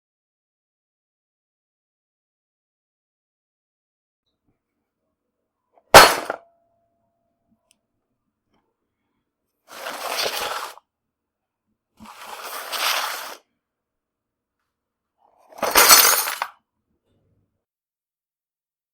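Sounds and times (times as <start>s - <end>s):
toolbox falling and crashing: 6.0s - 6.4s, 15.6s - 16.5s.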